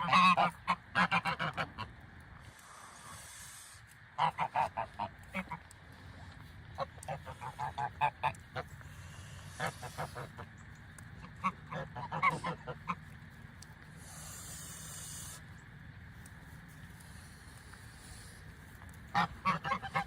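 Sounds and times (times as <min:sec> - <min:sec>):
geese honking: 0:00.0 - 0:15.6, 0:17.1 - 0:20.0
goose hissing: 0:02.4 - 0:04.6, 0:08.8 - 0:10.5, 0:12.0 - 0:12.8, 0:13.9 - 0:15.5, 0:17.1 - 0:18.5.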